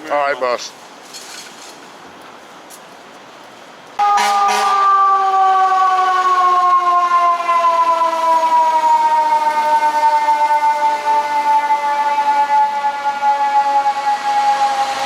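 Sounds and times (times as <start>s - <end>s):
low street noise: 0.0s - 15.0s
fire engine siren wailing: 4.0s - 15.0s.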